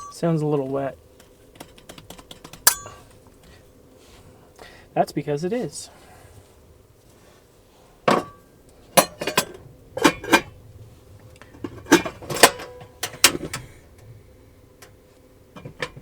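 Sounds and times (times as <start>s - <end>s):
cast iron cookware clanking: 0.0s - 0.2s, 2.5s - 3.2s, 9.0s - 10.5s.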